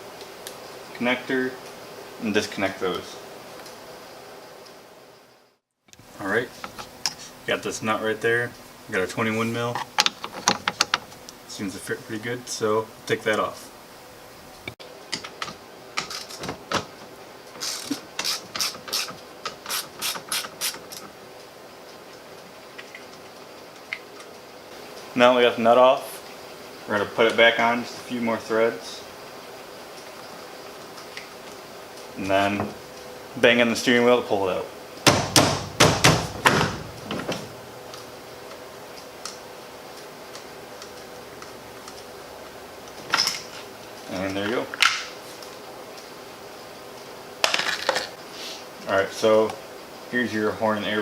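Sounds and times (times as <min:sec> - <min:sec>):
socket ratchet clicking: 0:17.6 - 0:21.0.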